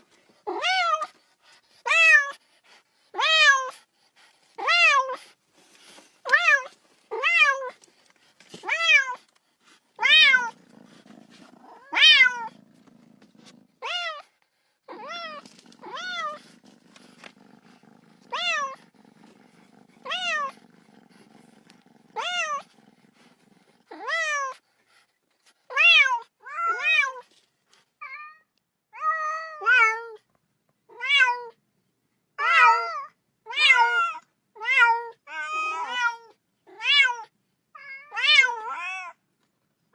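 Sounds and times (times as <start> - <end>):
cat purring: 7.8 - 25.0
cat meowing: 8.6 - 9.2, 10.0 - 10.6, 11.6 - 12.6, 13.8 - 14.3, 14.9 - 16.4, 18.2 - 18.8, 20.0 - 20.6, 22.2 - 22.6, 25.7 - 27.2, 32.4 - 39.2.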